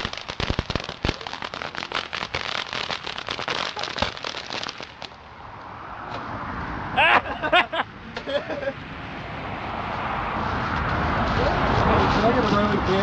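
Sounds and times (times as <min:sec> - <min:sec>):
fireworks crackling: 0:00.0 - 0:05.3, 0:10.4 - 0:13.0.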